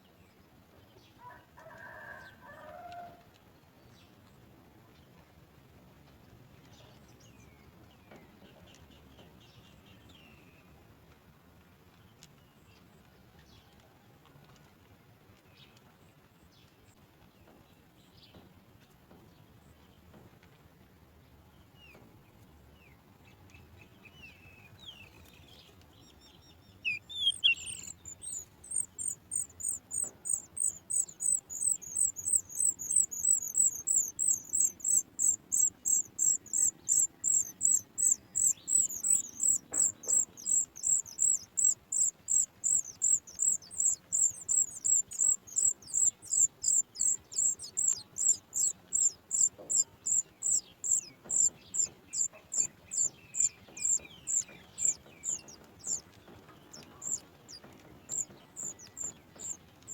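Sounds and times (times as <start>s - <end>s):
nestlings cheeping: 26.8s - 56.0s, 56.6s - 59.9s.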